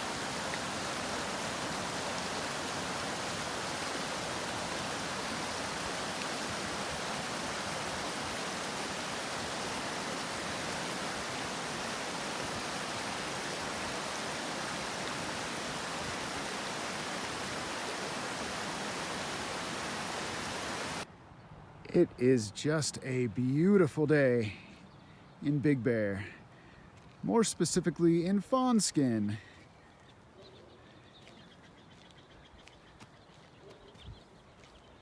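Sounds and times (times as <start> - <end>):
creek water rushing: 0.0 - 21.1.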